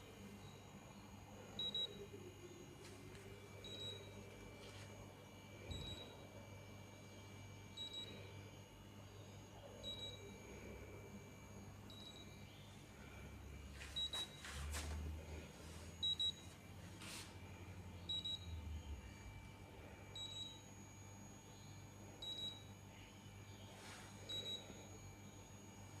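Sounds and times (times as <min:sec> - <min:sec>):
short high alarm beeps: 0:15.9 - 0:16.5, 0:18.1 - 0:18.6.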